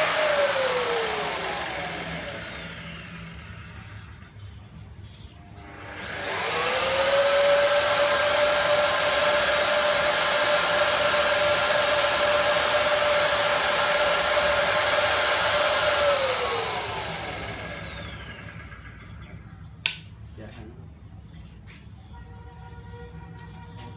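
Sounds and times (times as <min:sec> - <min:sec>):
drill motor whining: 0:00.0 - 0:04.4, 0:05.6 - 0:19.3.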